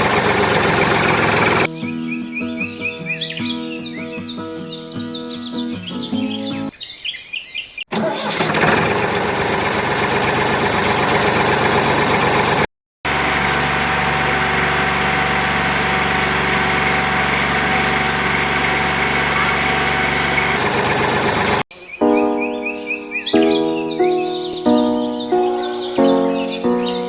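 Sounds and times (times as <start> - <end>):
motor running with rattle: 0.0 - 1.7, 8.0 - 21.7
birdsong: 0.0 - 7.9, 14.2 - 27.0
music: 1.7 - 6.7, 22.0 - 27.0.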